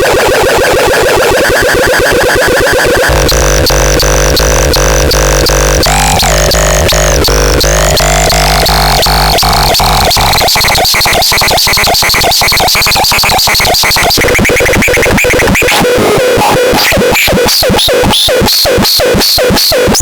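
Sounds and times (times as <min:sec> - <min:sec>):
chopped synthesizer pattern: 0:00.0 - 0:16.1
heavy bass: 0:02.9 - 0:16.1.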